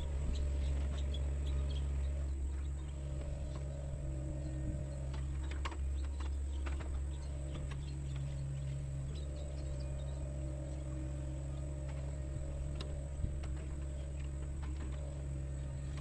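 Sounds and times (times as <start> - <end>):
excavator diesel engine running: 0.0 - 16.0
light clicks and knocks: 11.6 - 16.0.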